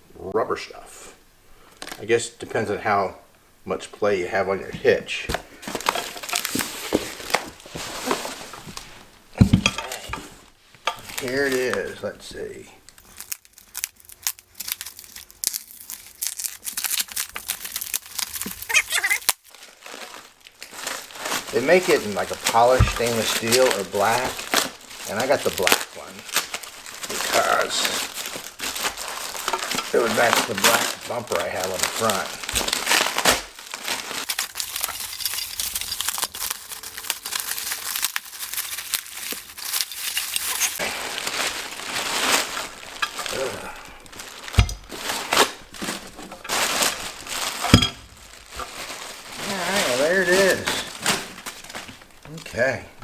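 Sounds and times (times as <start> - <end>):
packaging crinkling and tearing: 5.6 - 8.9, 11.0 - 12.0, 12.9 - 52.7.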